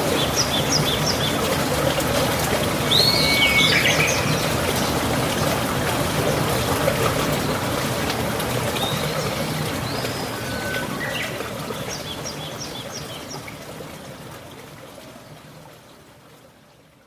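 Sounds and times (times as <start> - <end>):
water trickling: 0.0 - 17.0
birds chirping: 8.8 - 13.1.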